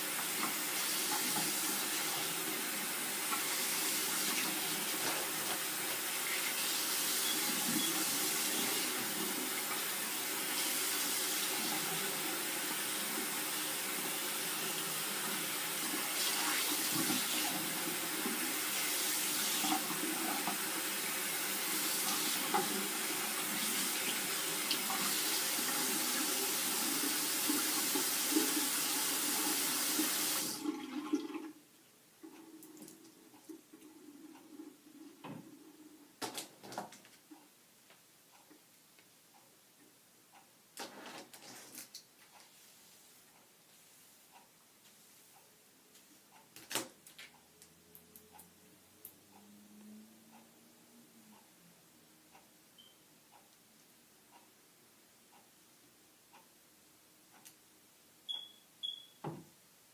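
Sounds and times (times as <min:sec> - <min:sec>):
tap water running: 0:00.0 - 0:31.6.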